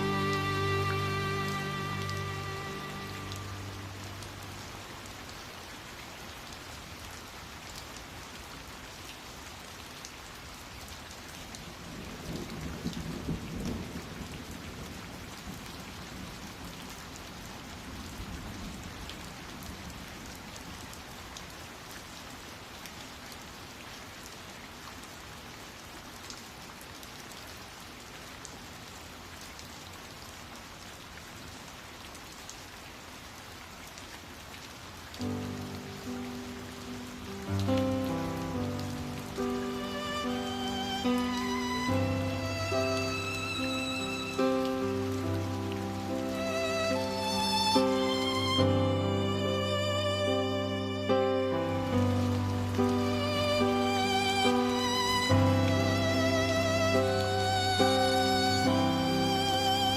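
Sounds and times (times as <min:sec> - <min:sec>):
steady rain falling: 0:00.0 - 0:59.9
low roll of thunder: 0:11.8 - 0:16.8.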